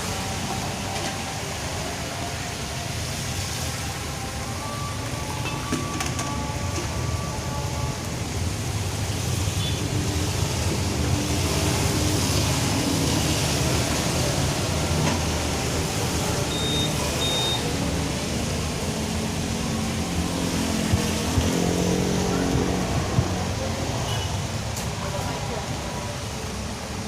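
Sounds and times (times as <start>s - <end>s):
heavy rain in strong wind: 0.0s - 27.0s
short high beeps: 16.5s - 17.6s.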